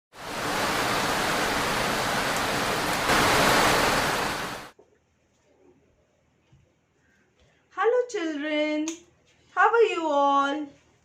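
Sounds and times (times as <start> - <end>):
heavy rain hissing: 0.1 - 4.7.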